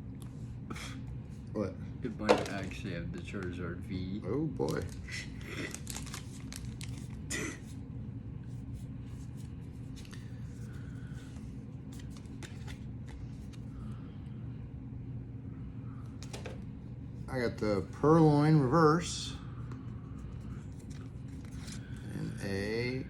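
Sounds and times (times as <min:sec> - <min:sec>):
low background hum: 0:00.0 - 0:23.0
cards and wrappers rustling: 0:02.2 - 0:03.6, 0:04.6 - 0:07.4, 0:09.2 - 0:13.7, 0:20.3 - 0:22.1.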